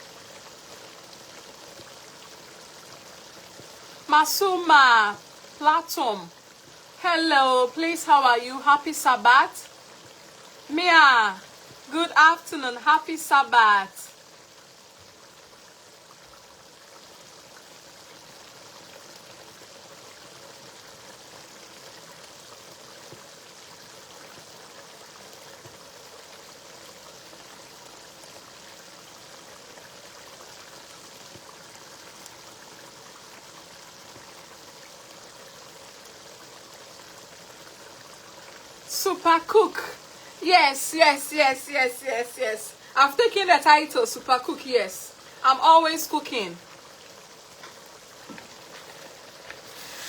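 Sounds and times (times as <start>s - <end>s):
stew sizzling and simmering: 0.0s - 50.0s.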